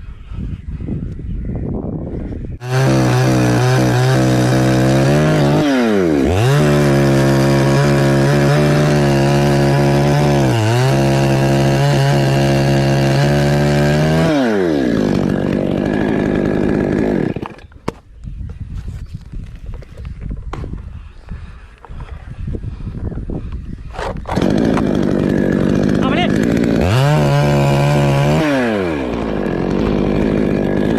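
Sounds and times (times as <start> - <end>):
chainsaw running at high revs: 2.6 - 17.7, 24.2 - 30.9.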